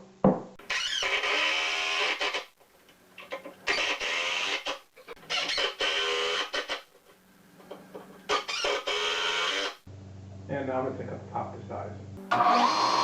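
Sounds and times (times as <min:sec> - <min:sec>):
power drill whining: 0:00.7 - 0:02.5, 0:03.6 - 0:06.9, 0:08.3 - 0:09.8, 0:12.3 - 0:13.0.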